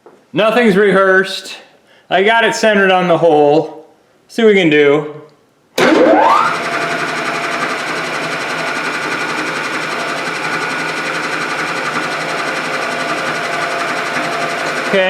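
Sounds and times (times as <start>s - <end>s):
milling machine spindle motor: 5.8s - 15.0s.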